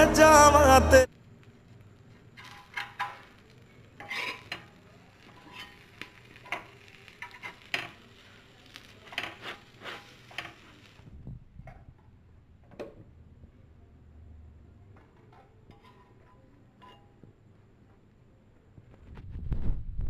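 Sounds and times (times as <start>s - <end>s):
cookware and utensils clinking: 2.4s - 3.4s, 4.0s - 8.2s, 9.0s - 10.8s, 15.0s - 17.3s.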